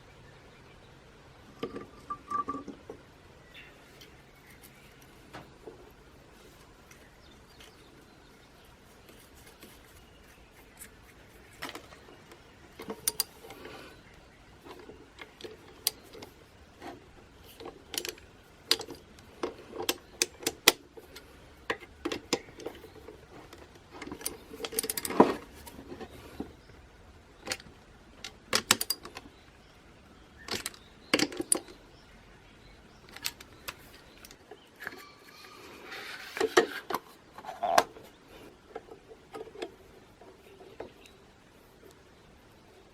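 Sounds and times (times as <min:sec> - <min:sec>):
metal parts and tools clinking: 0:10.6 - 0:26.6.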